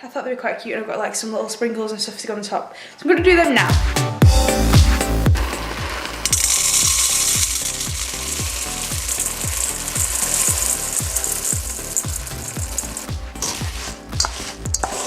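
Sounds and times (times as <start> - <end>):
music with thumping beat: 3.2 - 15.0
sizzling hiss: 4.3 - 15.0.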